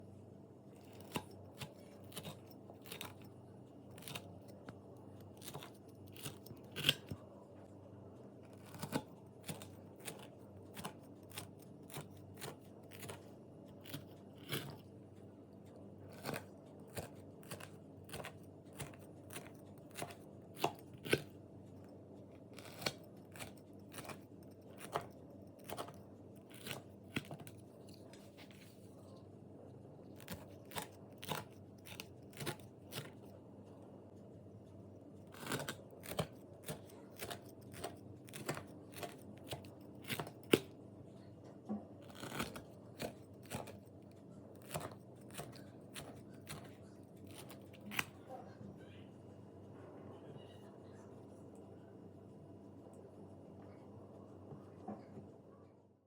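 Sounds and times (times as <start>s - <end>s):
crisp pastry crunching: 42.0s - 48.2s.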